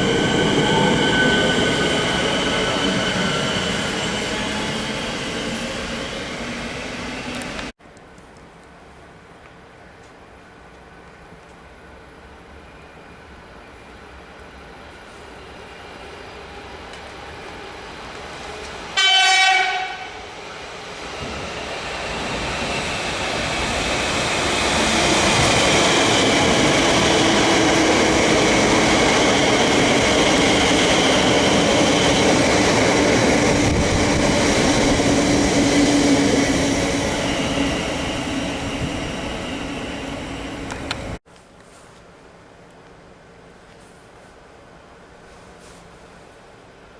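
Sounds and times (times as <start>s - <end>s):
electric train horn: 19.0s - 20.3s
train wheel and motor rush: 20.7s - 41.2s.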